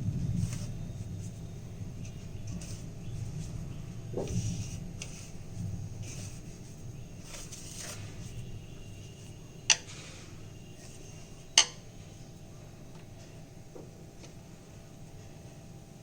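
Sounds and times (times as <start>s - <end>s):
low steady hum: 0.0s - 16.0s
dishes clinking together: 11.6s - 11.9s.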